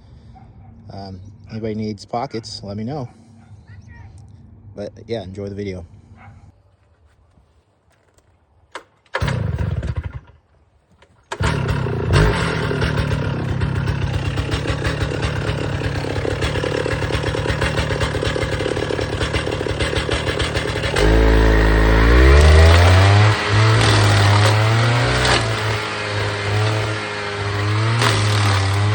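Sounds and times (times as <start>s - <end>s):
gas engine starting and revving: 9.1s - 10.4s, 11.3s - 28.9s.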